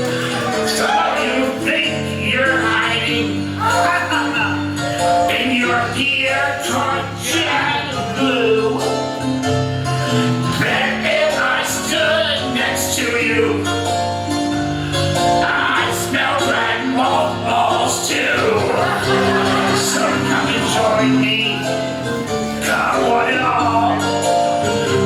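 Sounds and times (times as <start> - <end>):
upbeat song with singing: 0.0 - 9.4, 10.5 - 14.0, 15.1 - 25.0.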